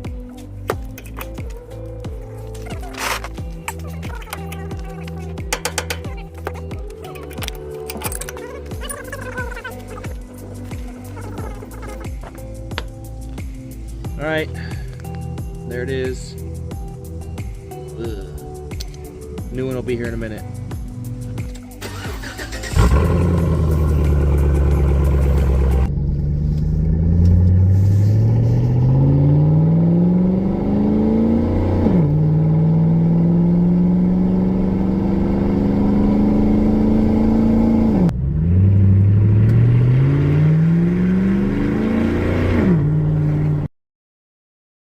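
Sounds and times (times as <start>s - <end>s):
pickup engine accelerating: 21.8s - 43.7s.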